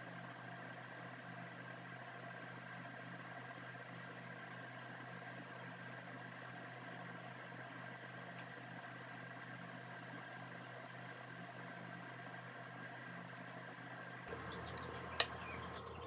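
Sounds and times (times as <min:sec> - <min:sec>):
electrical hum: 0:13.3 - 0:16.0
faint small ticks: 0:14.3 - 0:16.0.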